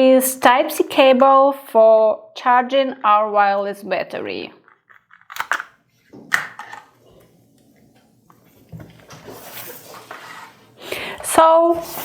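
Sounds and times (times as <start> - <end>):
packaging clicks and rustles: 4.8 - 5.7.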